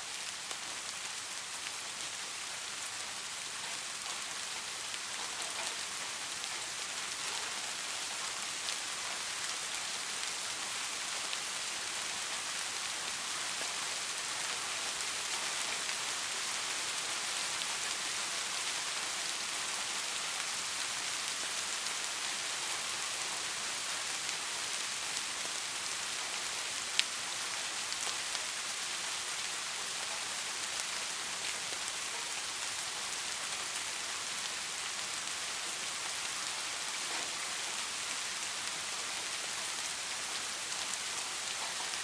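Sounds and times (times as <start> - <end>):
steady rainfall hiss: 0.0 - 42.0
raindrop ticks: 26.9 - 27.2.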